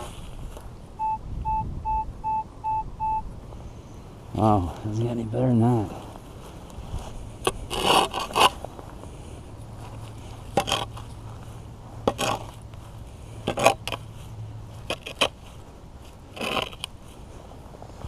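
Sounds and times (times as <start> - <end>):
shovel scraping soil: 7.4 - 8.8, 9.8 - 11.4, 12.0 - 12.6, 13.4 - 14.1, 14.8 - 15.4, 16.3 - 17.2.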